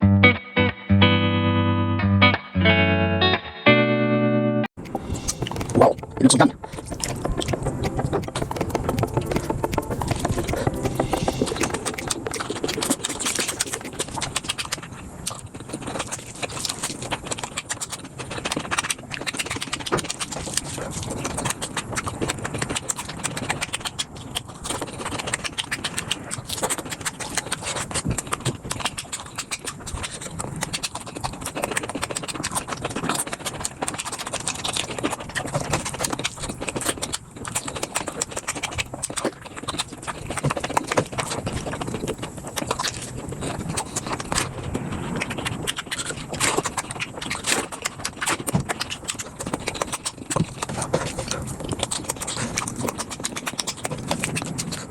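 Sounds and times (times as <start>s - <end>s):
sped-up chewing and crunching: 4.8s - 54.9s.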